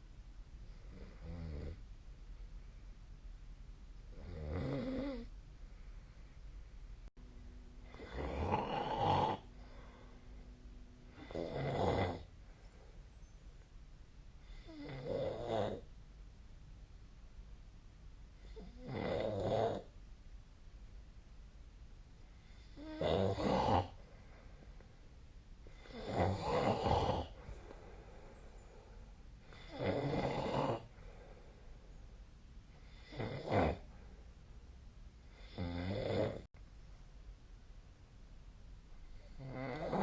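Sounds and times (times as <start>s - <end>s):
person snoring: 4.1s - 5.3s, 7.8s - 10.2s, 11.1s - 12.3s, 14.4s - 15.8s, 18.4s - 19.9s, 22.4s - 24.0s, 25.7s - 28.0s, 29.5s - 30.9s, 32.8s - 34.0s, 35.3s - 36.5s, 39.2s - 40.0s.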